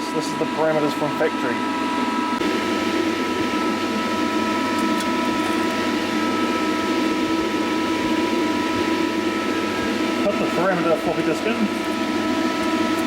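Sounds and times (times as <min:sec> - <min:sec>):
milling machine humming: 0:00.0 - 0:13.0.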